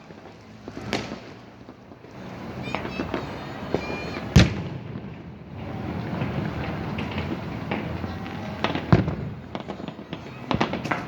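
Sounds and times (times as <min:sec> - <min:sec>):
fireworks bangs: 0:00.0 - 0:11.0
fireworks crackle: 0:00.0 - 0:11.0
fireworks whistles: 0:00.0 - 0:11.0.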